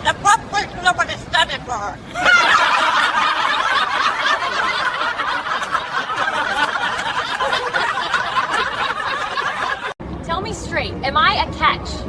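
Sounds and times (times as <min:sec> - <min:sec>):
people laughing together: 0:02.1 - 0:10.0.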